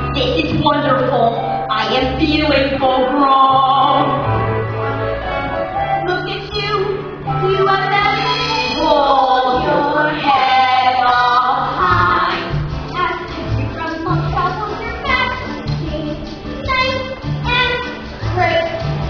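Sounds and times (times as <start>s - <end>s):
instrumental accompaniment: 0.0s - 19.0s
steady bass notes: 1.7s - 19.0s
voices singing: 7.7s - 17.8s.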